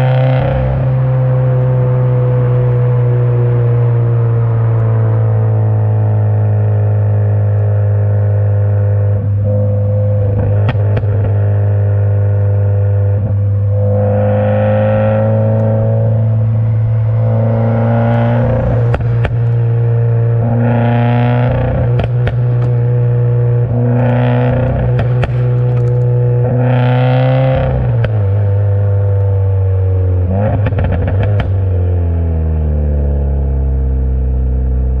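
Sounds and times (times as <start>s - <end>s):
car engine revving: 0.0s - 35.0s
exhaust pops and crackles: 10.3s - 12.6s, 17.1s - 29.3s, 30.4s - 31.8s.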